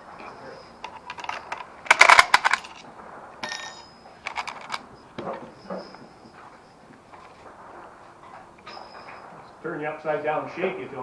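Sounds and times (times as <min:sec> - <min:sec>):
metal cartridges clinking: 0:00.0 - 0:07.4.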